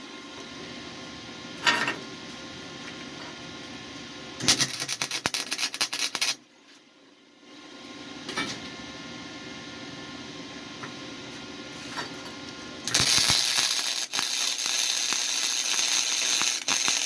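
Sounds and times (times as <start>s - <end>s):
welding arc crackling: 4.5s - 6.4s, 12.9s - 17.0s
steady hum: 12.8s - 17.0s.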